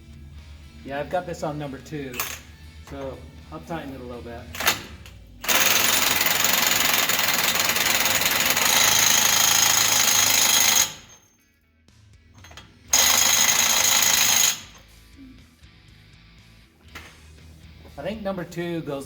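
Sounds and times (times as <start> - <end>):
impact wrench hammering: 4.6 - 11.3, 12.4 - 14.9.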